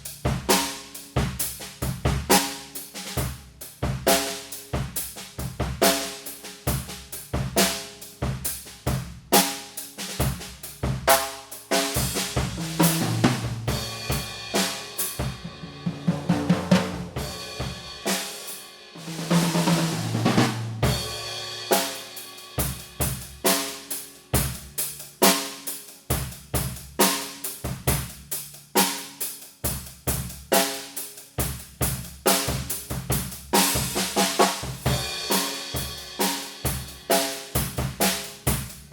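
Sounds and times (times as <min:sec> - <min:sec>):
drum kit groove: 0:00.0 - 0:38.9
drum fill: 0:10.2 - 0:25.4, 0:32.3 - 0:38.9.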